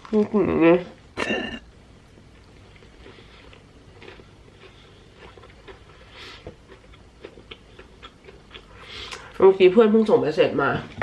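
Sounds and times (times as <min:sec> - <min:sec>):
quiet chewing: 0:02.1 - 0:09.4.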